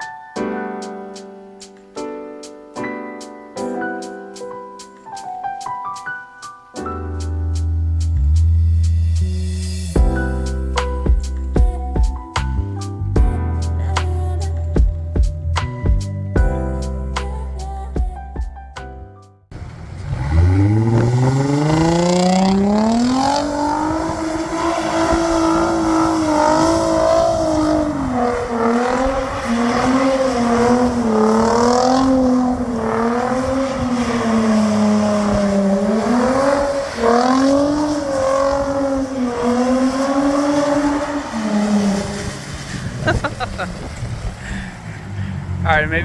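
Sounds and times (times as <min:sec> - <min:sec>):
car engine revving: 0:19.6 - 0:46.0.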